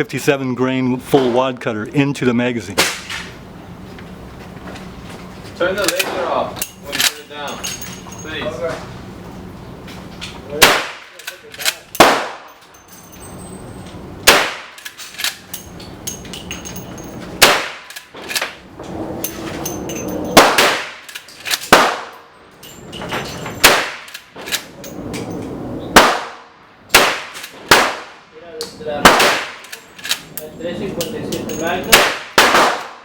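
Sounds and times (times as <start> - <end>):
rifle shots: 10.6 - 12.6, 14.2 - 14.9, 17.4 - 18.0, 20.4 - 22.2, 23.6 - 24.2, 25.9 - 28.2, 29.0 - 29.8, 31.9 - 33.0.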